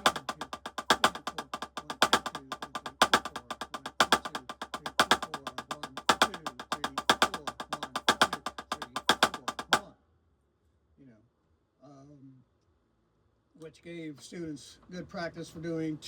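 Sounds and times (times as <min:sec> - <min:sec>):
snare drum rudiment: 0:00.0 - 0:09.9.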